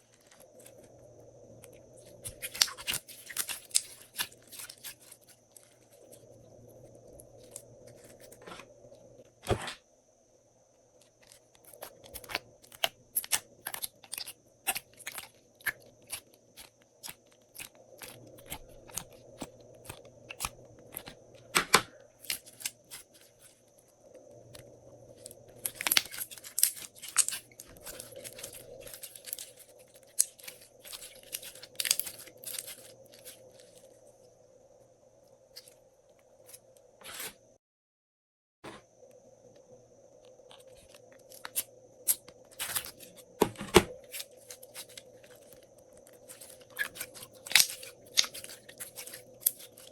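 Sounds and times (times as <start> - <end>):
sticky slime clicks and crackles: 2.2 - 5.2, 11.2 - 21.2, 25.6 - 33.4, 46.2 - 49.9
faint high whine: 38.7 - 49.9.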